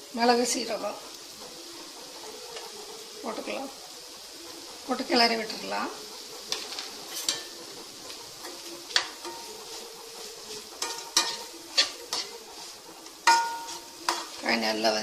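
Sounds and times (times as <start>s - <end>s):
vegetables sizzling in a pan: 0.0s - 15.0s
spatula tapping and scraping pan: 6.2s - 14.6s.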